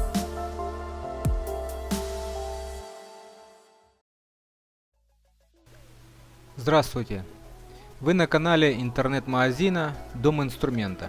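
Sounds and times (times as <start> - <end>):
electronic music with synth: 0.0 - 3.8.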